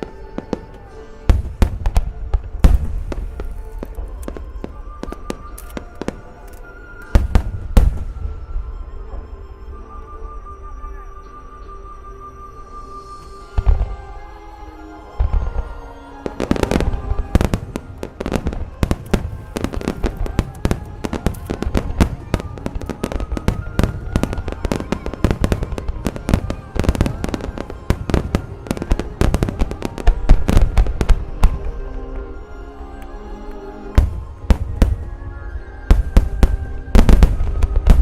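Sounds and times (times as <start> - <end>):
music playing: 0.0 - 38.0.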